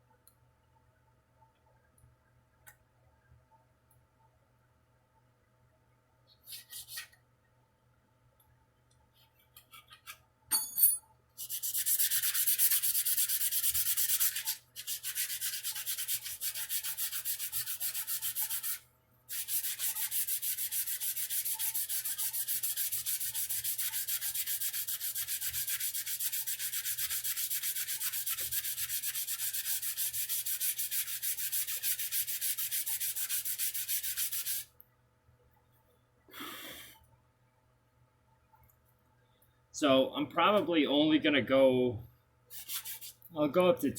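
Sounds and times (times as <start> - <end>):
sandpaper rubbing on wood: 11.4 - 34.7, 42.5 - 43.2.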